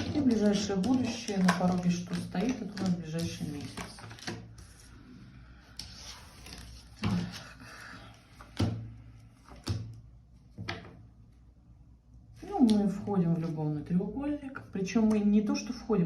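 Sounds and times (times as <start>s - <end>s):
faint rustling of cards: 0.0s - 10.6s.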